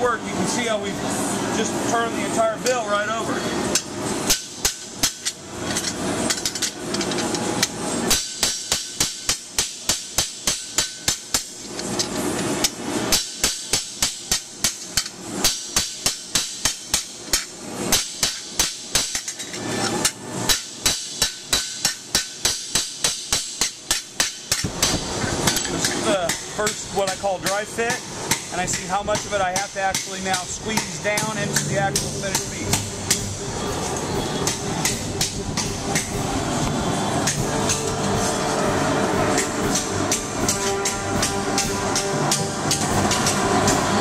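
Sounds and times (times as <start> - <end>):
hammer tapping sheet steel: 3.7 - 33.4, 34.4 - 44.0.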